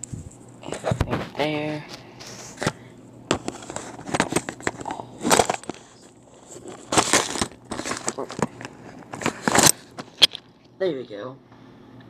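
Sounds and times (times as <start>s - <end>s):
phone handling clicks and rustling: 2.6s - 10.6s.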